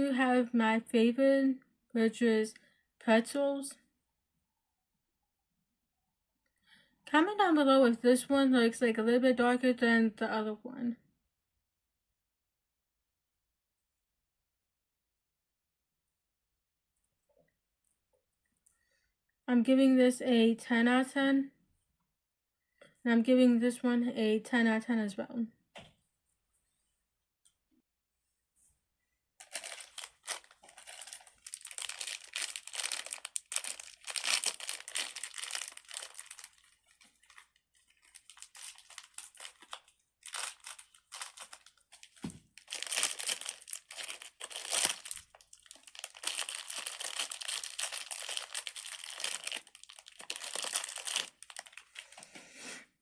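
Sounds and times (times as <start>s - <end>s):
plastic packaging crinkling: 29.4s - 52.2s.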